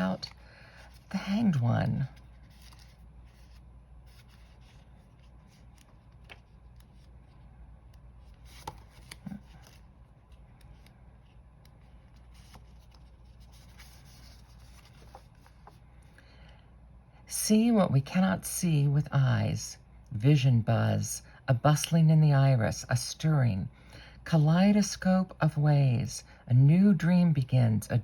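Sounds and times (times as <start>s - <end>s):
paper pages rustling: 0.0s - 16.1s.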